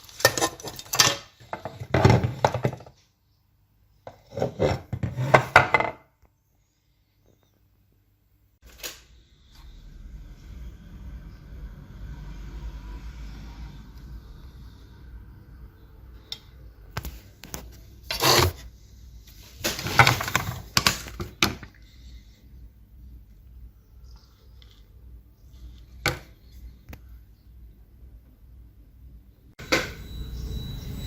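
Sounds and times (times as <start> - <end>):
scraping or rustling: 17.4 - 18.7, 19.3 - 21.3.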